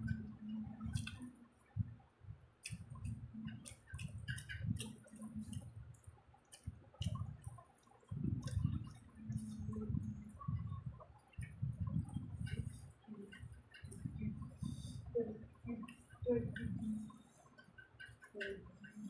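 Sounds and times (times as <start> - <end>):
person chewing food: 0.1 - 1.2, 2.6 - 10.4.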